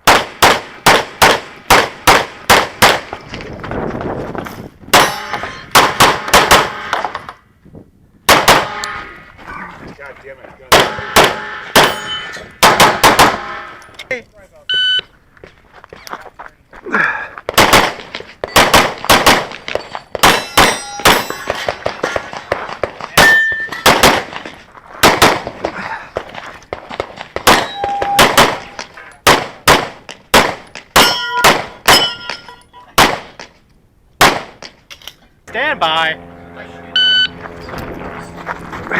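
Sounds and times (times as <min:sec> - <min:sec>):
rapid pistol shots: 0:00.0 - 0:03.1, 0:05.7 - 0:07.0, 0:08.3 - 0:08.8, 0:10.7 - 0:12.0, 0:12.6 - 0:13.5, 0:17.5 - 0:24.4, 0:25.0 - 0:25.7, 0:26.9 - 0:32.0, 0:33.0 - 0:33.4, 0:34.2 - 0:34.6
steel targets clanging: 0:05.0 - 0:07.3, 0:10.9 - 0:12.6, 0:19.7 - 0:21.7, 0:23.2 - 0:23.9, 0:31.0 - 0:33.0.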